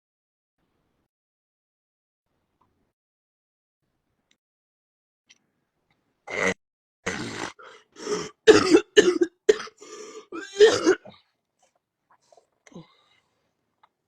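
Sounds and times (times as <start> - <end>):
woman coughing: 8.0 - 11.1.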